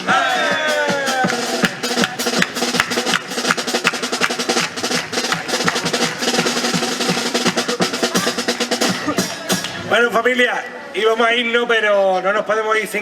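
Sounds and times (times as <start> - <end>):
snare and bass drum rhythm: 0.0 - 9.9.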